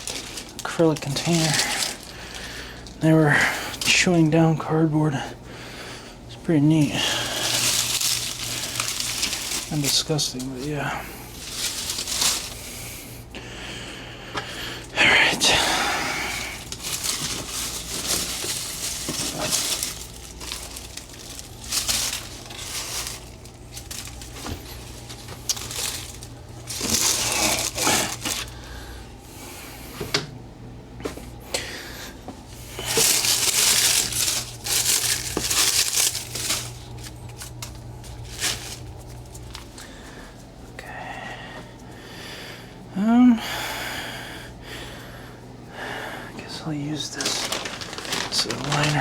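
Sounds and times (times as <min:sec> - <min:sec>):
material crumpled and torn: 0:00.0 - 0:04.4, 0:06.6 - 0:13.0, 0:15.1 - 0:28.9, 0:32.4 - 0:40.6, 0:46.7 - 0:49.0
low steady hum: 0:00.0 - 0:49.0.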